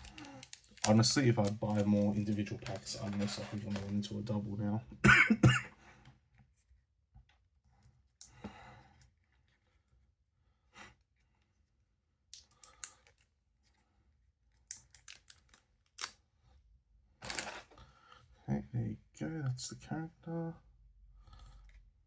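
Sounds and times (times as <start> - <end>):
packaging rustling and crinkling: 0.0 - 4.3, 17.2 - 17.8.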